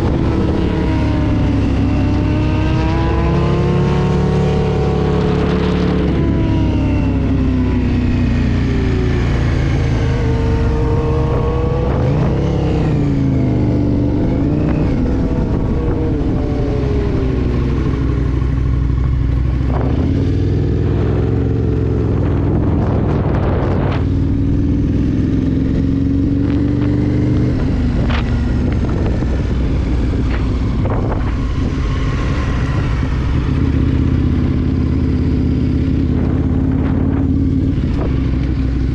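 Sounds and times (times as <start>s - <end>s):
motorcycle engine revving: 0.0s - 38.9s
wind rushing: 8.2s - 38.9s.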